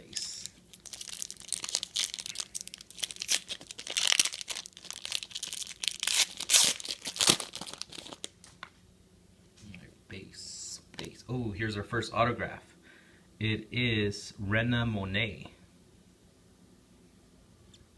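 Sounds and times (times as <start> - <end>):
wrapper being torn and crinkled: 0.3 - 8.7.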